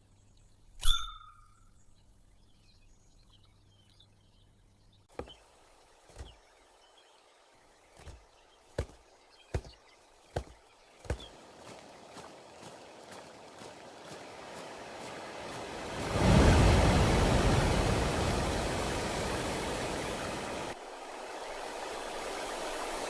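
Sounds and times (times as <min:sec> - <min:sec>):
faint birdsong: 0:00.0 - 0:23.0
hiss: 0:14.2 - 0:23.0.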